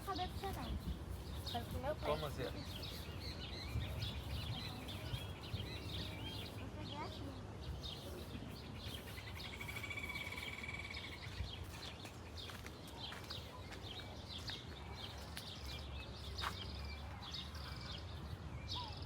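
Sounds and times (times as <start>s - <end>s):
birds chirping and calling: 0.0s - 19.0s
rapid high bird trill: 8.9s - 11.2s.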